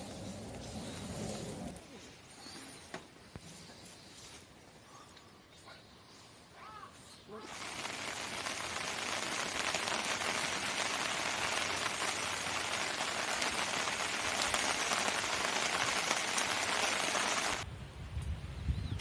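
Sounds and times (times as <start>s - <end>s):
meat sizzling: 7.5s - 17.6s.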